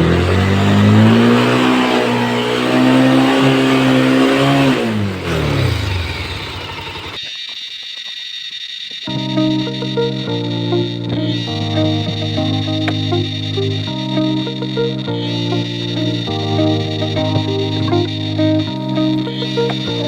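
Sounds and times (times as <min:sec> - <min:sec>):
motorcycle engine revving: 0:00.0 - 0:07.2.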